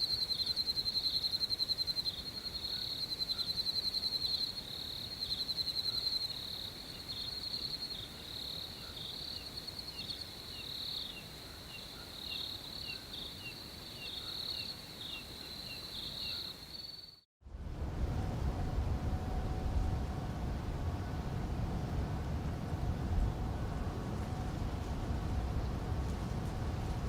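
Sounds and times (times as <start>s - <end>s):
crickets chirping: 0.0s - 17.3s
rumbling noise with faint hum: 17.4s - 27.0s.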